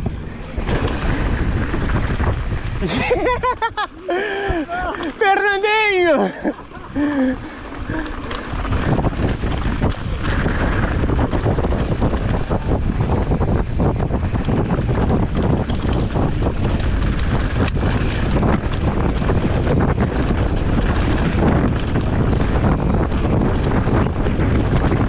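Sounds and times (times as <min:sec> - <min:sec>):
steady low rumble: 0:00.0 - 0:25.0
wind buffeting microphone: 0:00.0 - 0:25.0
small clicks and rattles: 0:13.9 - 0:24.8.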